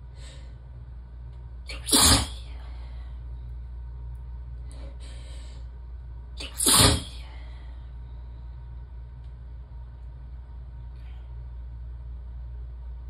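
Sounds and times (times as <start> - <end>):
steady low hum: 0.0 - 13.0
breath: 0.1 - 0.6, 2.5 - 3.3, 4.7 - 5.7, 7.2 - 8.4
woman sneezing: 1.7 - 2.4, 6.4 - 7.3.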